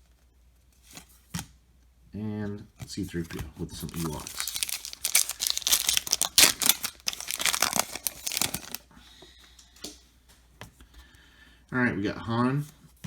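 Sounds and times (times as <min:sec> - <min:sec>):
wrapper tearing and crinkling: 0:03.8 - 0:08.9.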